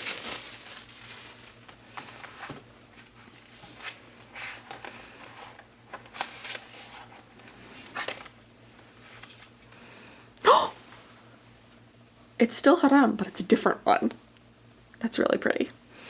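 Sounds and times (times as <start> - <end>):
cards rustling and sliding: 3.8 - 8.3.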